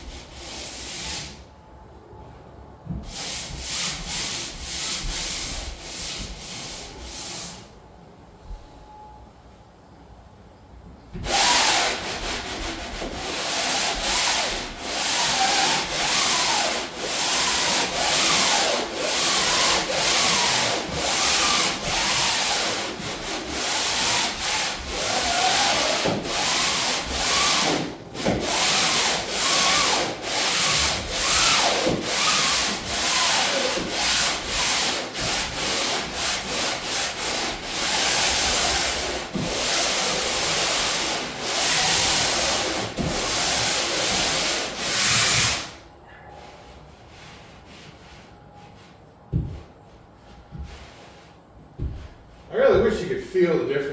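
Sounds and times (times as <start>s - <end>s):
sandpaper rasping on wood: 11.3s - 45.8s.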